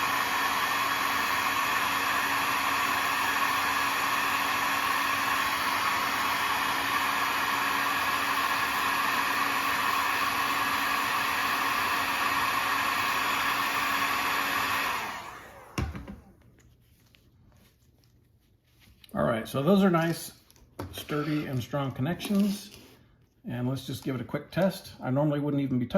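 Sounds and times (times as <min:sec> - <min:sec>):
heat gun blowing: 0:00.0 - 0:16.1
thump: 0:15.8 - 0:16.2.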